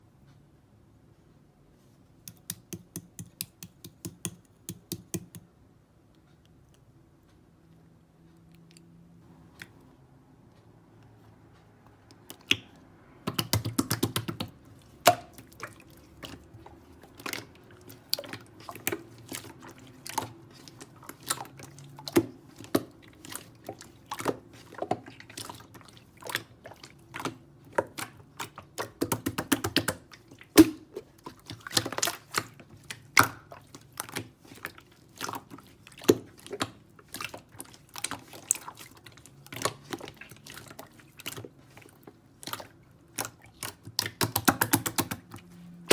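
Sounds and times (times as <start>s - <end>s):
sharp clicks and taps: 2.2s - 5.6s.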